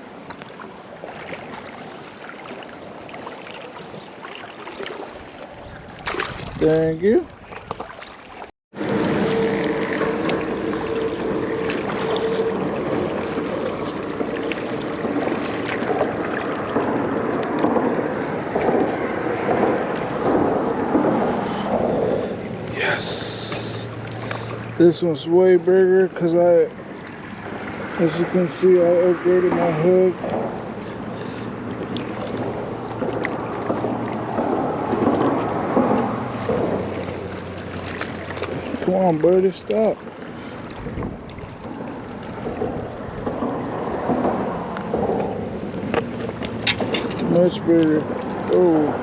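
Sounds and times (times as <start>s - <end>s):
river water rushing: 0.0s - 6.6s, 7.4s - 49.0s
faint splashes: 0.0s - 49.0s.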